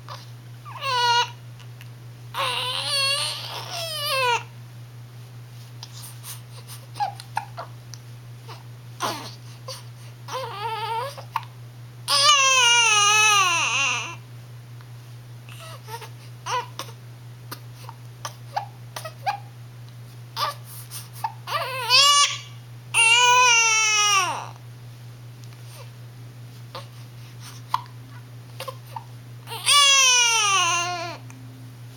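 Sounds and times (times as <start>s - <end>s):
baby crying: 0.1s - 1.4s, 2.4s - 4.5s, 8.5s - 11.4s, 12.1s - 14.2s, 15.5s - 17.0s, 20.4s - 20.6s, 21.2s - 24.6s, 28.6s - 31.2s.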